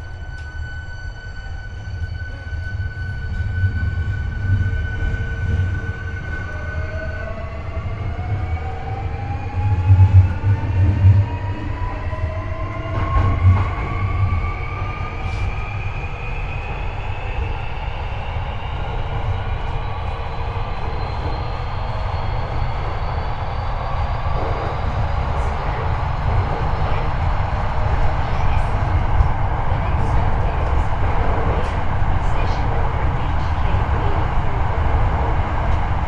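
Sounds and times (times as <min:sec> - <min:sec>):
rumble of train wheels: 0:00.0 - 0:36.0.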